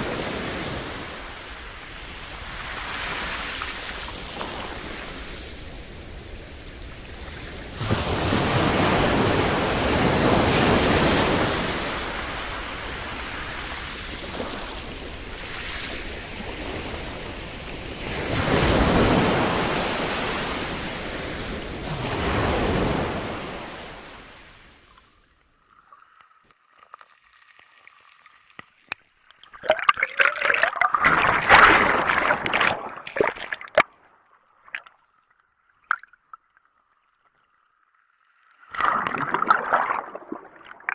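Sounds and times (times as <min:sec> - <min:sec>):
waves breaking on shore: 0:00.0 - 0:25.0, 0:29.6 - 0:33.8, 0:38.7 - 0:40.9.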